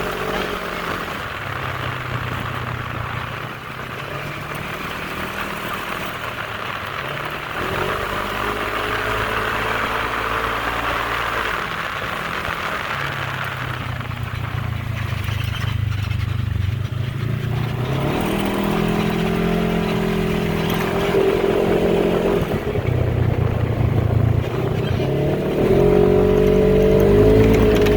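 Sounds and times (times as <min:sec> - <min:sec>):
atv engine running under throttle: 0:00.0 - 0:27.9.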